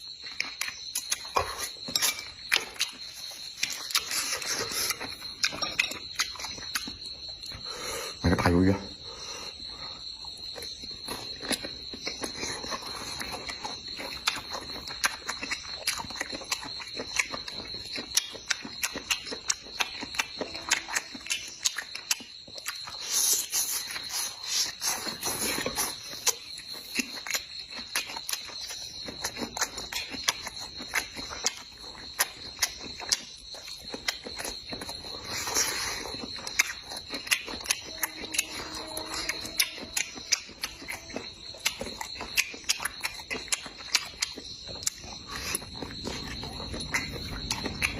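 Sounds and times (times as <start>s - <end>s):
insects chirring: 0.0s - 47.9s
person chewing with wet smacks: 0.0s - 47.9s.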